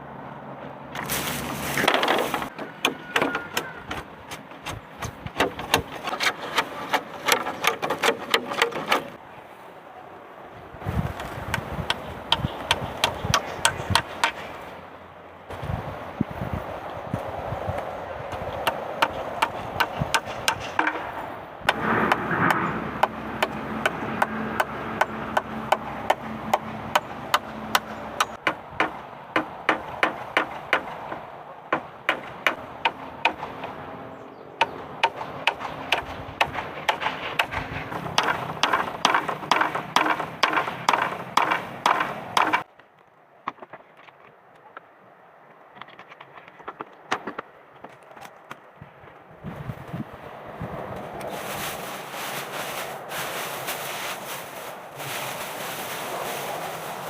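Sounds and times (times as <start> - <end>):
hand tool striking sharp knocks: 12.3 - 14.4, 18.6 - 21.1.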